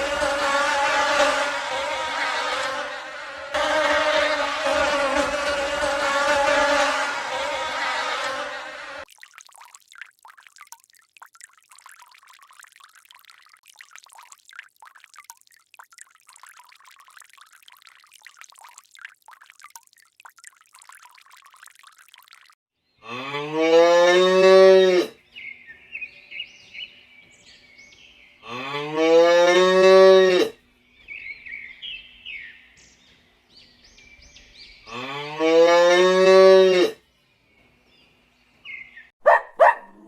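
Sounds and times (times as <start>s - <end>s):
bee buzzing: 0.0s - 9.1s.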